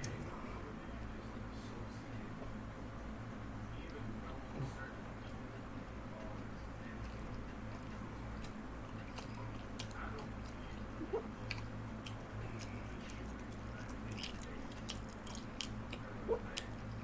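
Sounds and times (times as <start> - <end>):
steady low hum: 0.0 - 17.0
person chewing: 6.2 - 17.0.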